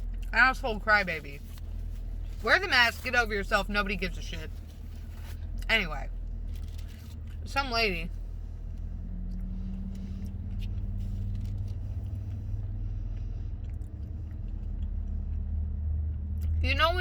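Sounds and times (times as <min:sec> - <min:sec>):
car engine idling: 0:00.0 - 0:17.0
faint biting and chewing: 0:04.5 - 0:07.5, 0:08.2 - 0:16.6.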